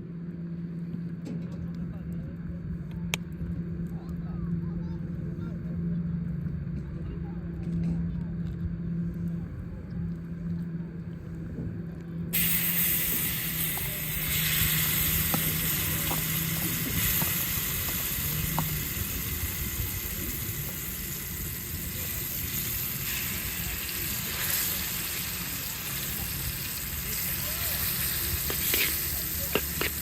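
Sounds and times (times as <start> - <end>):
food sizzling in oil: 12.4 - 30.0
oil popping: 12.4 - 30.0.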